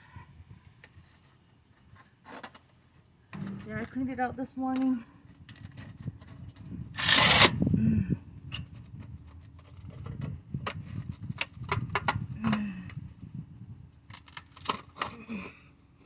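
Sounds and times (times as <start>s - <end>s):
clicks and knocks: 3.4s - 4.0s.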